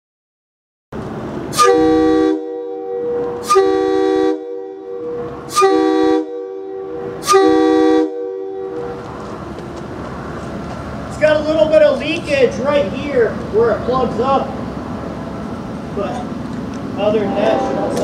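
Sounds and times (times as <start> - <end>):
locomotive air horn blasts: 1.5 - 9.0.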